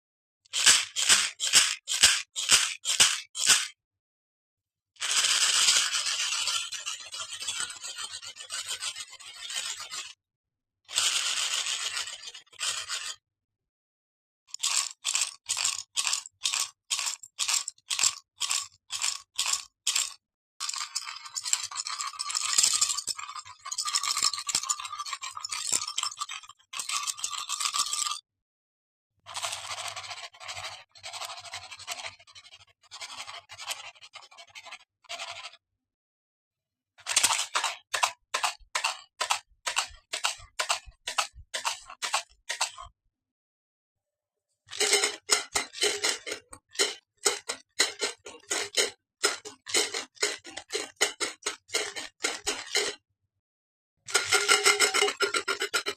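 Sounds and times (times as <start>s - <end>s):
household objects scraping: 44.7s - 53.0s, 54.1s - 55.9s.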